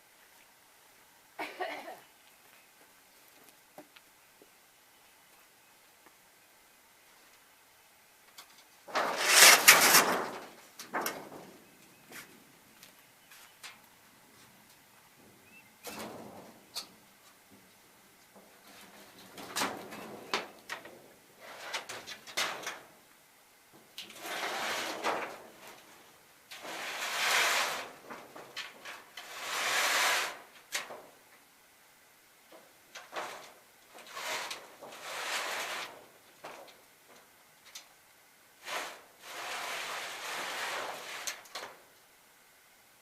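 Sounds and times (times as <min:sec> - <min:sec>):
roof shingles scraping: 0:08.8 - 0:12.4, 0:18.4 - 0:23.0, 0:23.8 - 0:31.2, 0:32.5 - 0:37.9, 0:38.6 - 0:42.0.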